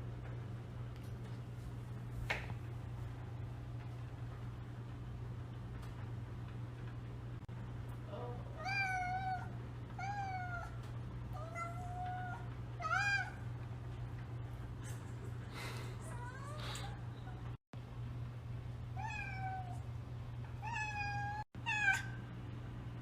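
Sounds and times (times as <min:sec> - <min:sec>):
steady low hum: 0:00.0 - 0:23.0
cat meowing: 0:08.6 - 0:13.4, 0:19.0 - 0:19.8, 0:20.6 - 0:22.2.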